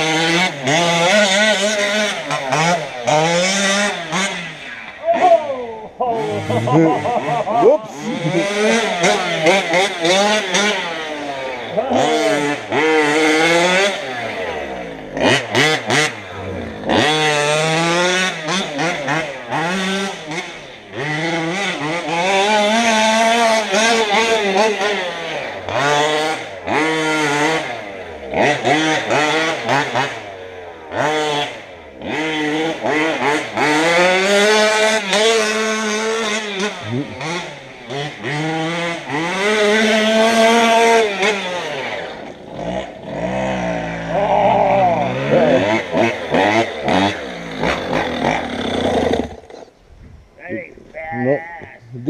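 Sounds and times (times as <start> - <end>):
two-stroke engine revving: 0.0 - 50.7.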